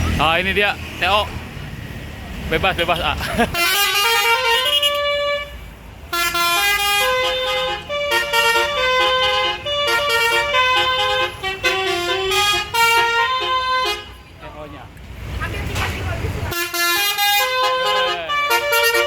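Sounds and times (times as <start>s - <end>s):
musical air horn playing a tune: 3.6s - 14.2s, 16.5s - 19.0s.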